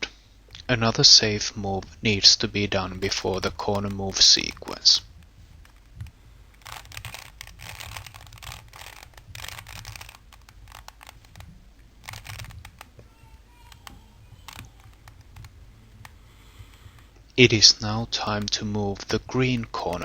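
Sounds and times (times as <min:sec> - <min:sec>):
puzzle cube layers clicking: 0:00.6 - 0:20.0.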